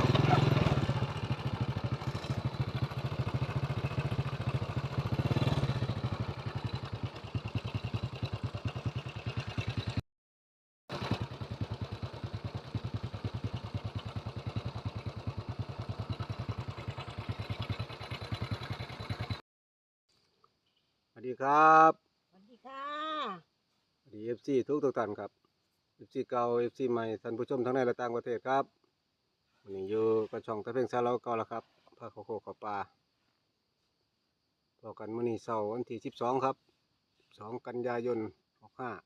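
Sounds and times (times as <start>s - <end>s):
small engine running: 0.0s - 10.0s, 10.9s - 19.4s.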